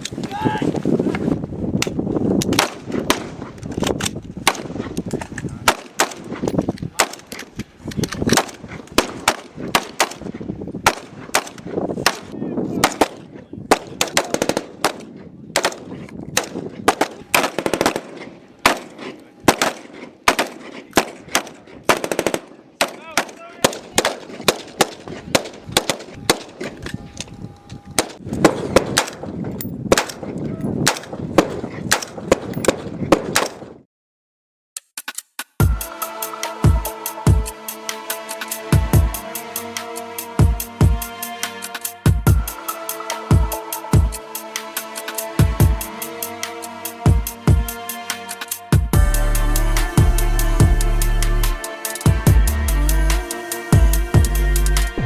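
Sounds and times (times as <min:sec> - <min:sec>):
gunshots: 0:02.5 - 0:05.0, 0:05.6 - 0:07.5, 0:08.2 - 0:26.8, 0:28.0 - 0:33.8.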